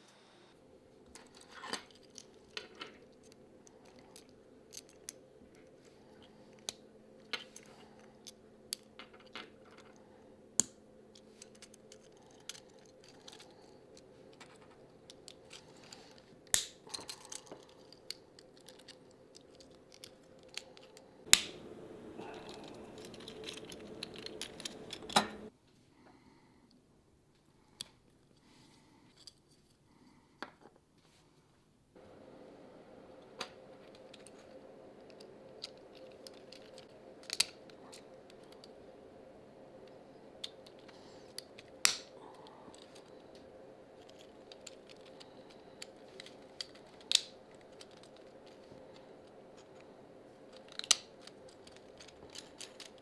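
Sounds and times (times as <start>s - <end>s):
faint steady hum: 0.0s - 30.6s, 31.2s - 53.0s
plastic parts clicking: 10.6s - 25.5s, 33.5s - 38.8s, 40.4s - 49.9s, 50.5s - 53.0s
plastic scraping: 21.4s - 25.5s.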